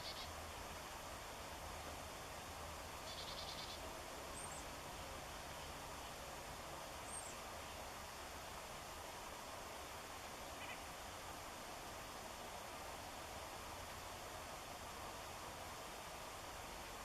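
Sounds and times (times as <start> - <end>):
songbirds calling: 0.0 - 0.4, 3.0 - 4.8, 7.0 - 7.9, 10.4 - 10.9.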